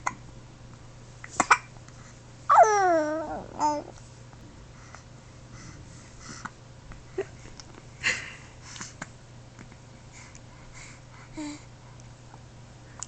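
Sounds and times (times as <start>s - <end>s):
soft breathy sounds: 4.7s - 9.1s, 9.7s - 13.0s.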